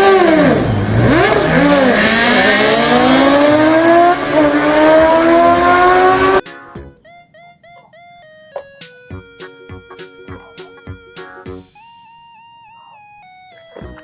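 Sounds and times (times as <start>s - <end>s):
racing car engine accelerating: 0.0s - 6.4s.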